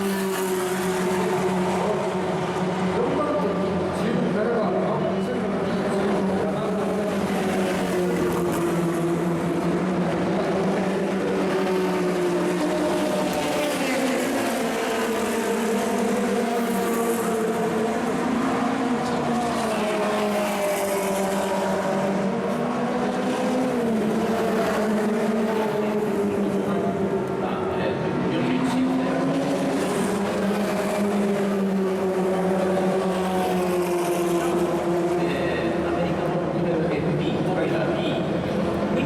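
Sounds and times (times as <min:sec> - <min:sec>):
race car engines running: 0:00.0 - 0:39.0.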